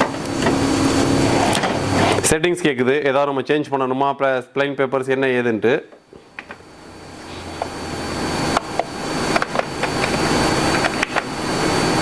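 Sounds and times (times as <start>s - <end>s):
faint high whine: 6.4s - 12.0s
printer mechanical whir: 6.4s - 12.0s.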